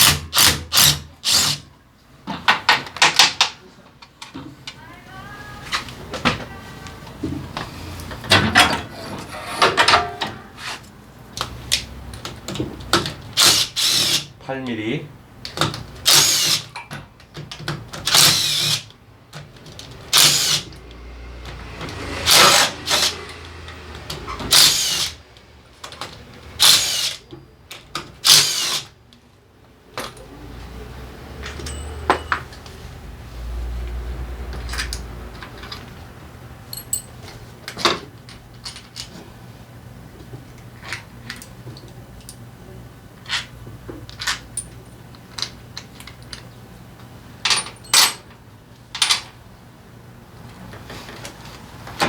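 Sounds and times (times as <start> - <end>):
power driver running: 21.5 - 25.2
tools clicking and clinking: 31.4 - 32.7, 34.5 - 36.0, 36.6 - 39.1, 43.2 - 46.5.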